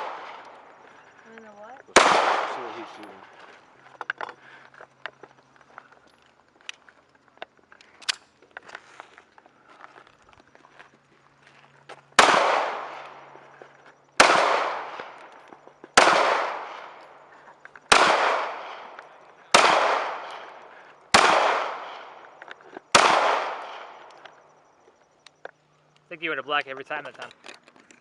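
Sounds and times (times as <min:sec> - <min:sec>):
gunshots with ringing echo: 0:00.0 - 0:00.9, 0:01.9 - 0:03.4, 0:12.2 - 0:13.6, 0:14.2 - 0:17.2, 0:17.9 - 0:22.3, 0:22.9 - 0:24.1.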